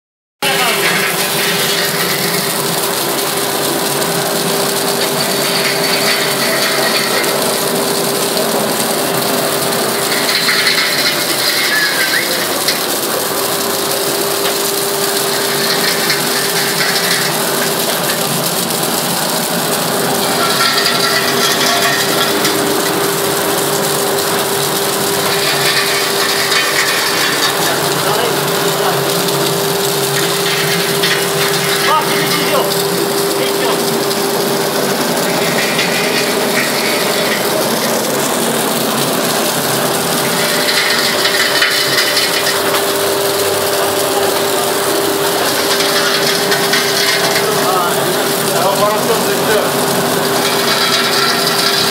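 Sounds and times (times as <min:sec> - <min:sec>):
ice machine grinding and rattling: 0:00.4 - 0:51.9
machine hum: 0:00.4 - 0:51.9.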